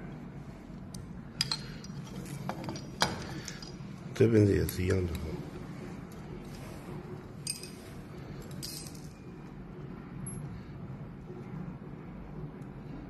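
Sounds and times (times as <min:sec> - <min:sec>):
low steady hum: 0:00.0 - 0:13.0
metallic clinks of tool and screws: 0:01.4 - 0:03.8, 0:07.4 - 0:09.1.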